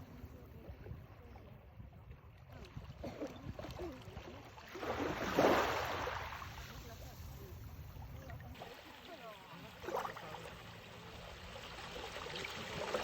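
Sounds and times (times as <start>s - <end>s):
waves lapping on sandy beach: 3.2s - 13.0s.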